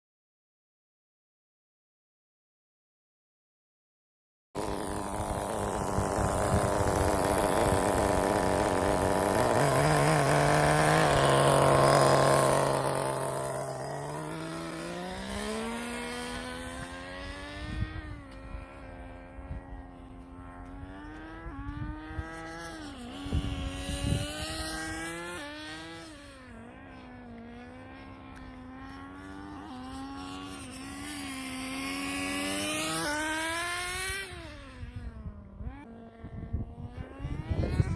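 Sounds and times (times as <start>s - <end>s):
rc car engine revving: 4.6s - 37.9s.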